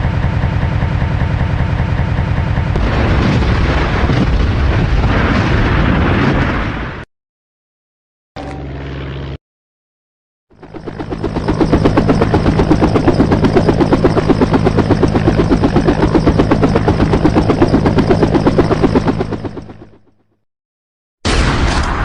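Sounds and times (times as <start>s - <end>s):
vehicle engine pulsing drone: 0.0s - 3.0s, 10.6s - 20.3s.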